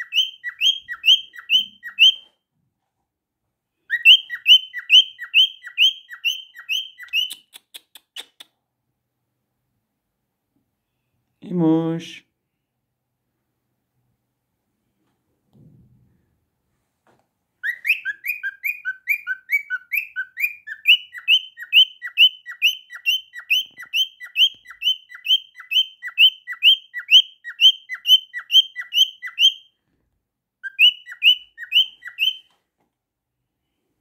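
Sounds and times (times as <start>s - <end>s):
cockatiel chirping: 0.0s - 2.3s, 3.9s - 7.6s, 17.6s - 29.8s, 30.6s - 32.5s.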